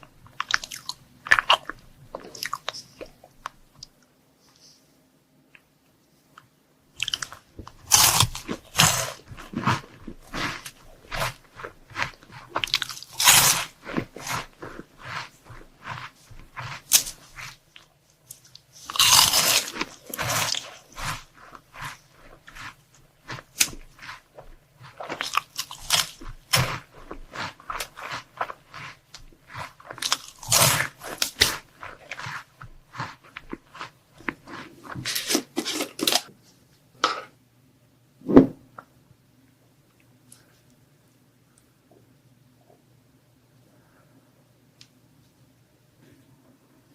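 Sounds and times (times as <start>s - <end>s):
chewing crunchy sweets: 0.0s - 4.0s, 7.0s - 36.3s.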